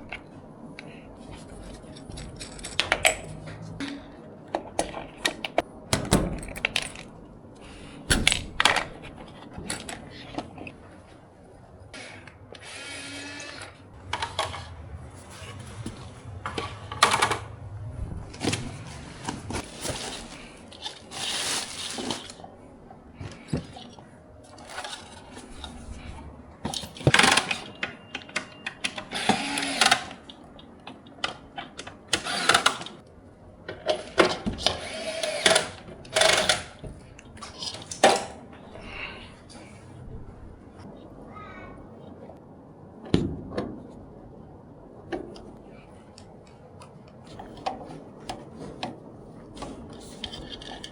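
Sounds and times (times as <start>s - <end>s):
low hum: 13.9s - 20.6s
tools clattering and scraping: 14.0s - 17.6s, 47.2s - 50.9s.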